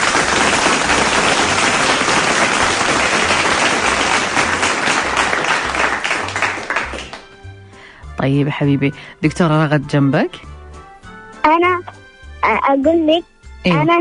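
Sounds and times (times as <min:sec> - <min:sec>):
crowd applause: 0:00.0 - 0:07.3.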